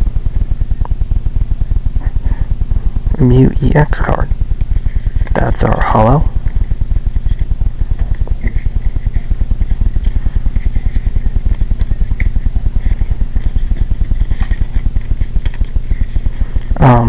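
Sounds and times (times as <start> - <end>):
pulsing low motor rumble: 0.0 - 17.0
playing cards crinkling: 4.6 - 16.8.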